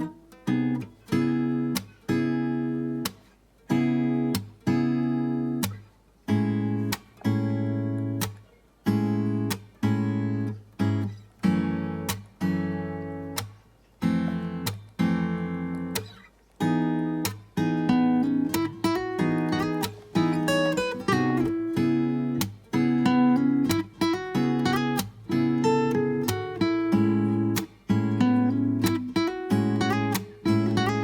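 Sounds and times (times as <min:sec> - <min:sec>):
strummed acoustic guitar chords: 0:00.0 - 0:31.0.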